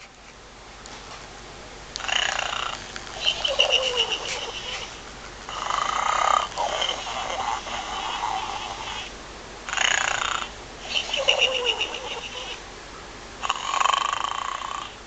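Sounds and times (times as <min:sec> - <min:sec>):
toy playing pig noises: 0:02.0 - 0:05.0, 0:05.6 - 0:09.1, 0:09.7 - 0:12.6.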